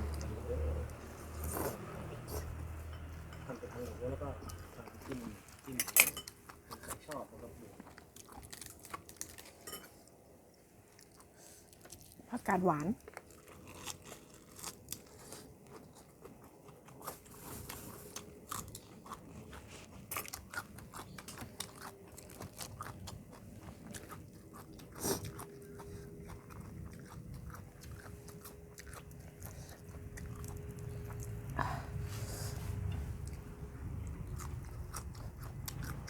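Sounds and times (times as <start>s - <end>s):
person crunching raw vegetables: 6.6s - 10.2s, 13.0s - 32.0s, 32.7s - 36.0s.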